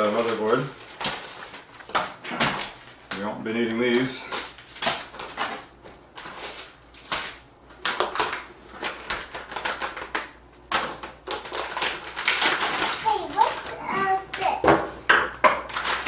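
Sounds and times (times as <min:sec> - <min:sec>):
parts and packaging handled: 0:00.0 - 0:16.0.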